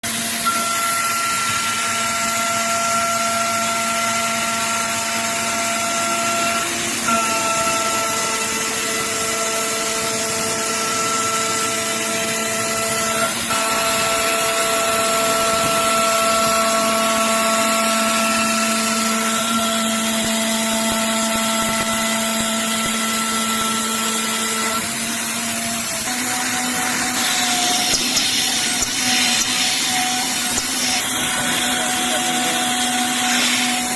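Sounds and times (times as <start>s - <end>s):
milling spindle whine: 0.1s - 33.9s
hiss of metal cutting: 1.1s - 33.9s.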